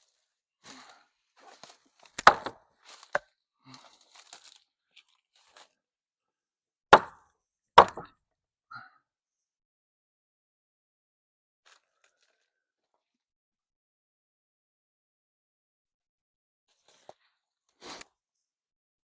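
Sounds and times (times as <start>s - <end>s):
wood crunching and scraping: 1.4s - 5.7s
boards knocking and cracking: 2.2s - 2.6s, 7.8s - 8.1s.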